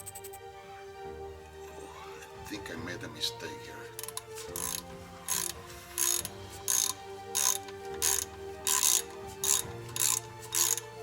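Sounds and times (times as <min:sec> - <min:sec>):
ratchet wrench clicking: 0:04.0 - 0:11.0.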